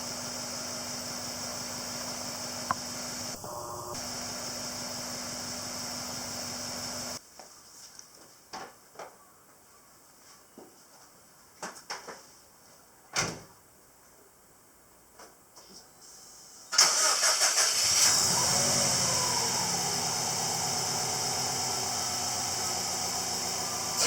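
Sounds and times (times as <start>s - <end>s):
engine running with hiss and hum: 0.0s - 7.2s, 17.8s - 24.0s.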